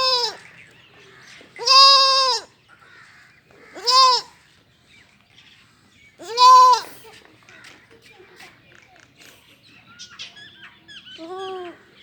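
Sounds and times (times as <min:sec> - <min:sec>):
baby goat bleating: 0:00.0 - 0:00.4, 0:01.6 - 0:02.5, 0:03.7 - 0:04.4, 0:06.2 - 0:07.0.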